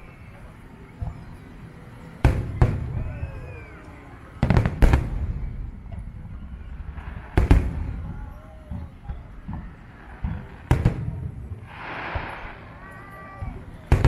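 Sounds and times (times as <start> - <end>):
fireworks bursting with echoing bangs: 0.4 - 14.0.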